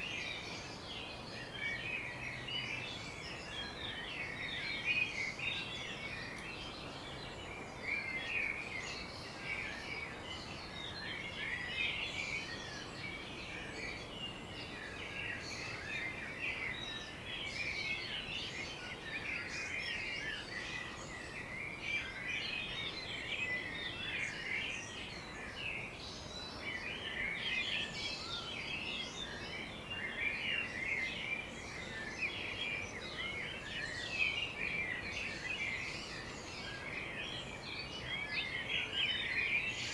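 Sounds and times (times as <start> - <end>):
birds chirping and singing: 0.0 - 39.9
faint background hiss: 0.0 - 39.9.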